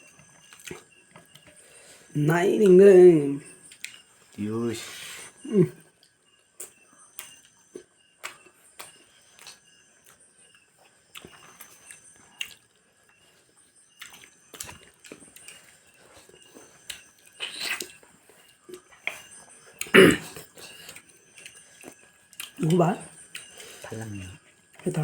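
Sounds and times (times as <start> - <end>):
biting and chewing crunches: 13.9 - 22.7.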